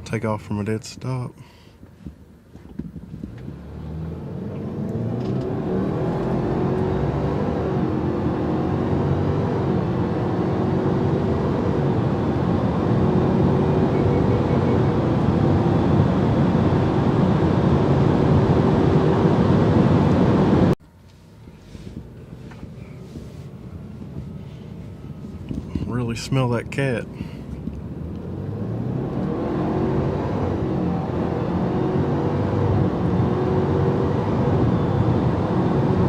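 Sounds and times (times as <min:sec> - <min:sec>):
quiet cabin noise: 0:00.0 - 0:07.0, 0:20.0 - 0:29.2
car engine accelerating hard: 0:03.1 - 0:20.8, 0:25.5 - 0:36.0.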